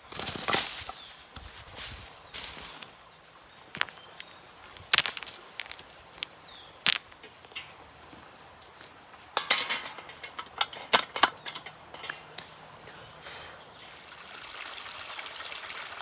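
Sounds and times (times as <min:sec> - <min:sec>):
dry twigs crackling and snapping: 0:00.0 - 0:07.7.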